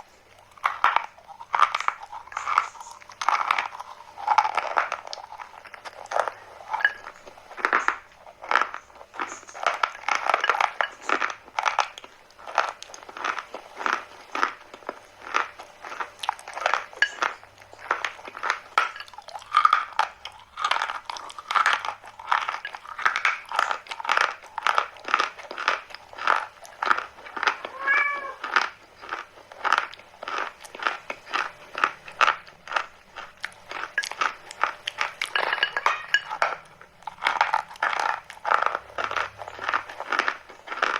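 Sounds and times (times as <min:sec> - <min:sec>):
chalk being bitten and chewed: 0:00.0 - 0:27.6.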